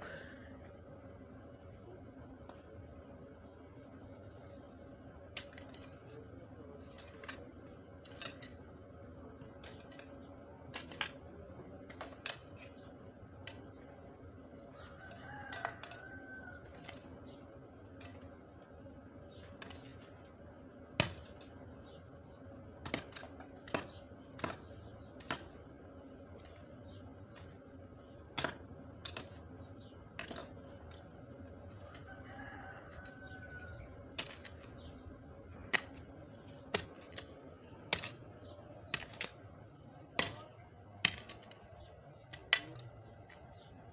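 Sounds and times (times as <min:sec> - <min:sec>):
sharp knocks and snaps of weeding: 0:09.3 - 0:14.0, 0:14.8 - 0:18.4, 0:21.0 - 0:22.0, 0:22.8 - 0:39.4, 0:40.1 - 0:43.9.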